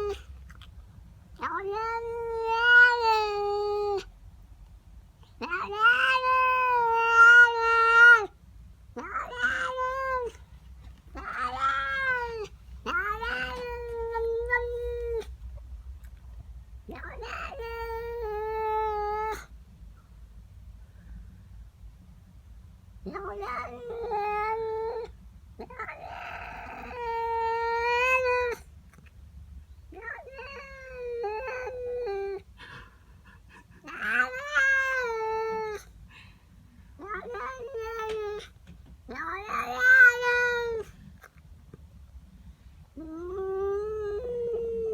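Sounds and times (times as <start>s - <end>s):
cat yowling: 0.0s - 0.3s, 1.4s - 4.1s, 5.4s - 8.4s, 9.0s - 10.5s, 11.1s - 15.4s, 16.9s - 19.5s, 23.0s - 28.7s, 29.9s - 32.5s, 33.8s - 35.9s, 37.0s - 38.5s, 39.1s - 41.0s, 43.0s - 44.9s.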